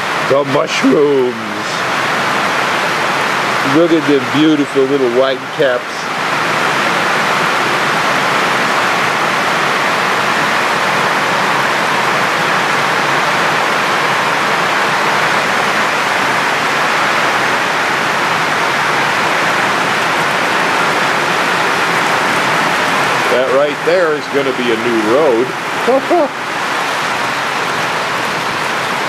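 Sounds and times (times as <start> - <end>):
heavy rain: 0.0 - 29.0.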